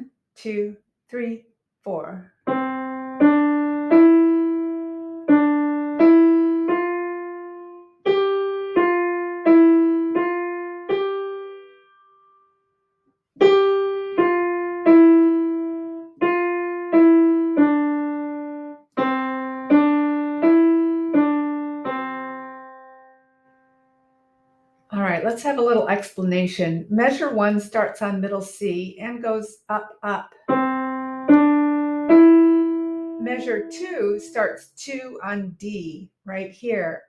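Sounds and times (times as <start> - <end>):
simple piano melody: 2.4 - 24.8, 30.4 - 34.6.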